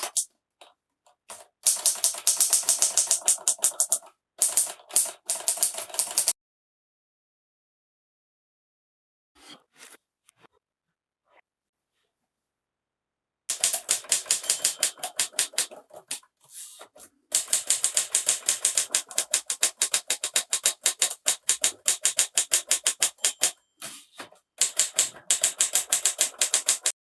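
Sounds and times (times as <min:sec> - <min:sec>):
typewriter keys clacking: 0:00.0 - 0:00.3, 0:01.3 - 0:06.3, 0:13.5 - 0:16.2, 0:17.3 - 0:24.0, 0:24.6 - 0:27.0.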